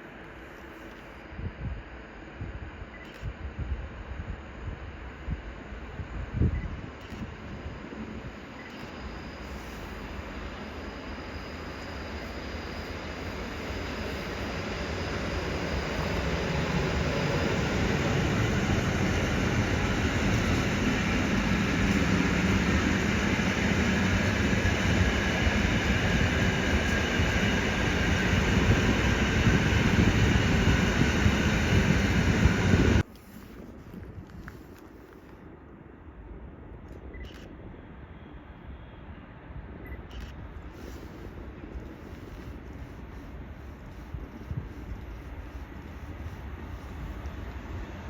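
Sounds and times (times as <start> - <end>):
train rumbling past: 7.6 - 33.1.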